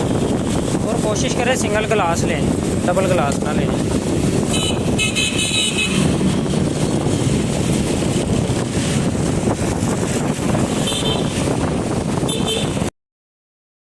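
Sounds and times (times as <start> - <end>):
road traffic: 0.0 - 12.9
wind on microphone: 0.0 - 12.9
horn beeps: 4.5 - 6.1.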